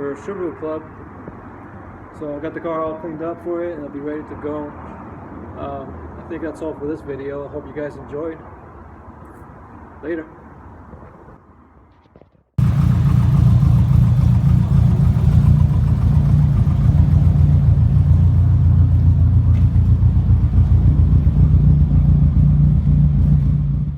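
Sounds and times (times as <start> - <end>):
car engine and exhaust droning: 12.6 - 23.9.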